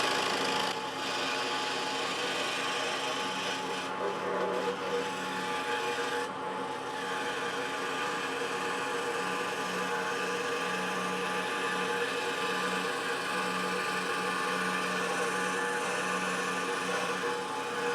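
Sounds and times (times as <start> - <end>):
scroll saw motor hum: 0.0 - 6.3
saw blade rasping through wood: 0.0 - 17.9.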